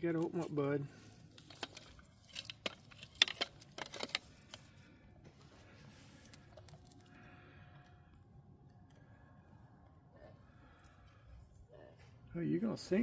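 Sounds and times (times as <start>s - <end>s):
faint handling noise: 0.0s - 12.2s
fishing tackle clicks and rattles: 1.3s - 4.7s.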